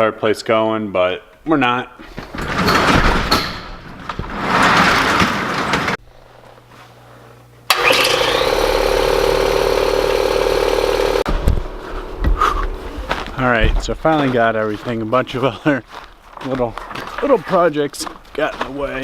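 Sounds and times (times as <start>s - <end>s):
air compressor droning: 6.0s - 14.1s
low hum: 7.6s - 14.2s.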